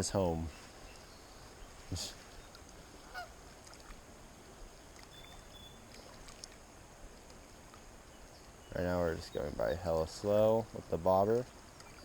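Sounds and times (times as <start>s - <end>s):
faint goose honking: 3.0s - 3.4s.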